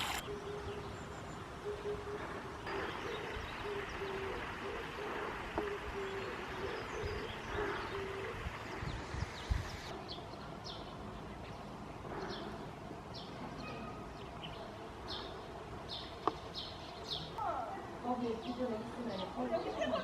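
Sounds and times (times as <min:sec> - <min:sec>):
background hiss: 0:00.0 - 0:12.0
bird hooting: 0:01.6 - 0:08.8.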